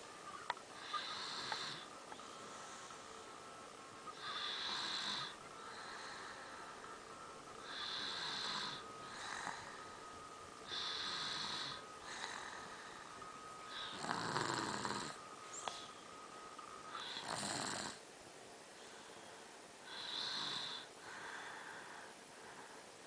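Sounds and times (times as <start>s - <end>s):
hissy rasping snoring: 0.7s - 3.2s, 4.1s - 7.0s, 7.6s - 15.8s, 16.9s - 18.0s, 19.8s - 22.1s.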